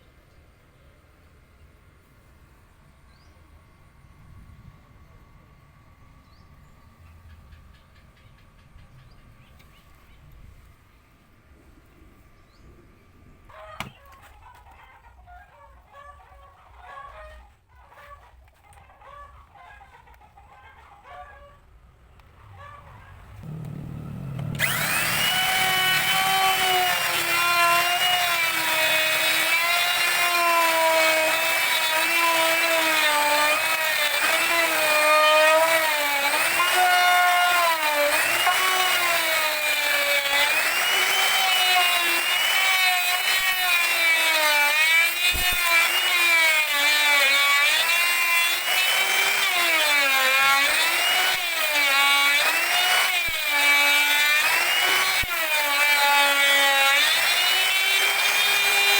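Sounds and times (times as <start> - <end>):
power tool cutting wood: 23.4 - 58.9.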